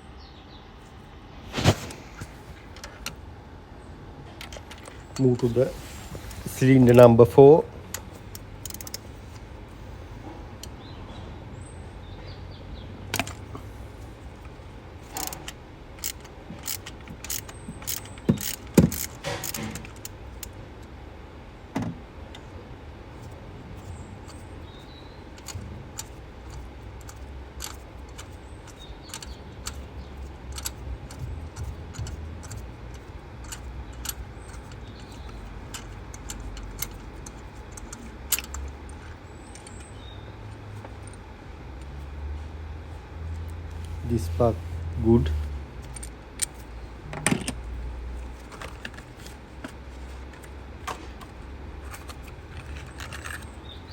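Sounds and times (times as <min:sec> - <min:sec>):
hand tools clicking and clinking: 0:07.9 - 0:09.0, 0:15.1 - 0:20.5, 0:25.3 - 0:40.0.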